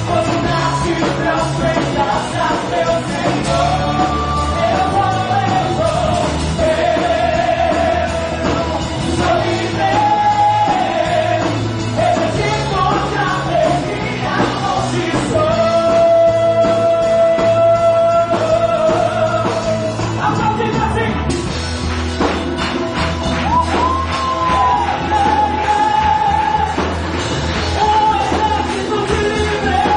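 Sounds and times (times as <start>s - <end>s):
person singing: 0.0s - 21.3s
rock band playing: 0.0s - 29.9s.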